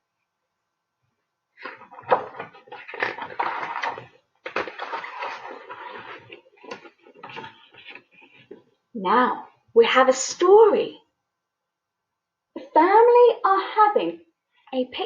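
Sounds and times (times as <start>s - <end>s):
pages rustling and sliding: 1.6s - 8.7s.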